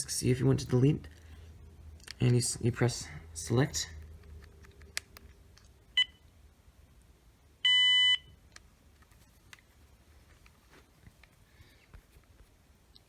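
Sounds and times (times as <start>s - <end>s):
cordless phone handset beeping: 7.6s - 8.3s.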